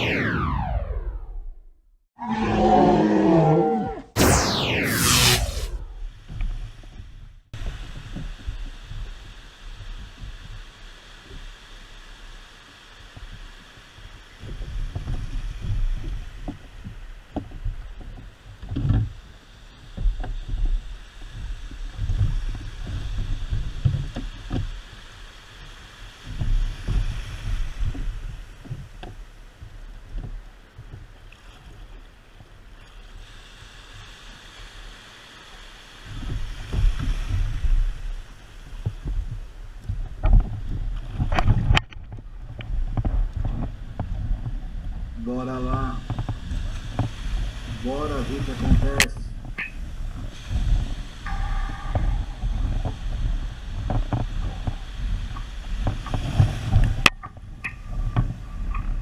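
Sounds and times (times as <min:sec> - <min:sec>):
wind on microphone: 0:36.0 - 0:59.0.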